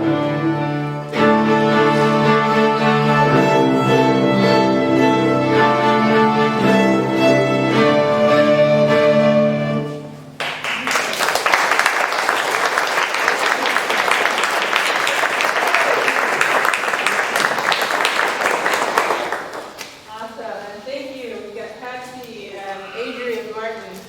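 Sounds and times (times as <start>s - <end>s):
violins and bowed strings playing: 0.0s - 10.4s
audience applauding: 10.4s - 20.1s.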